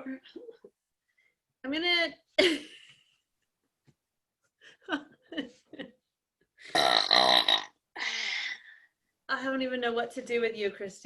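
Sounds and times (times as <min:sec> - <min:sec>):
woman burping: 0:06.7 - 0:07.8.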